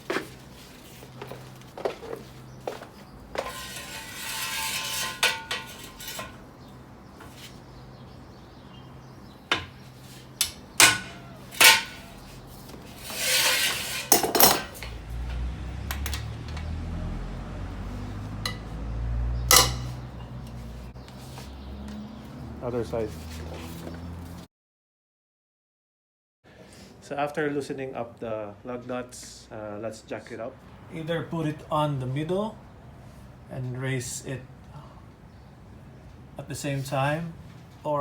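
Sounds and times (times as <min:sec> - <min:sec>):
lug wrench clanking on nuts: 0:09.5 - 0:12.2, 0:15.8 - 0:16.7, 0:18.4 - 0:18.7, 0:19.4 - 0:20.6.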